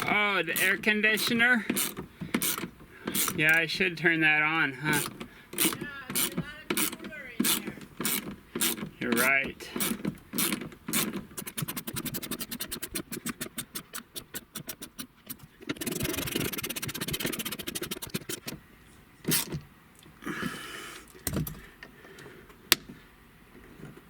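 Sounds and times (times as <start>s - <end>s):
rapid mechanical clicking: 0.0s - 4.0s, 4.8s - 18.6s, 19.3s - 19.6s
knocks and sharp clicks: 4.9s - 18.6s.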